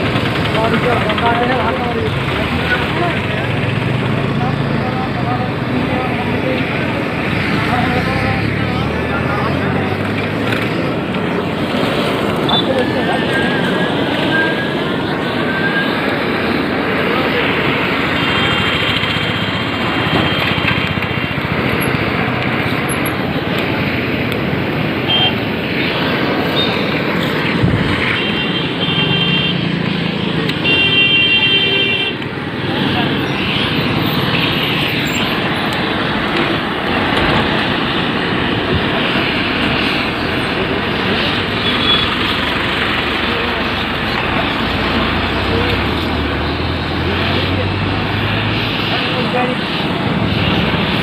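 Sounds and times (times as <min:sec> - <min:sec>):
people talking: 0:00.0 - 0:51.0
road traffic: 0:00.0 - 0:51.0
vehicle horn: 0:25.0 - 0:25.4, 0:28.1 - 0:29.8, 0:30.6 - 0:32.2, 0:41.6 - 0:42.2.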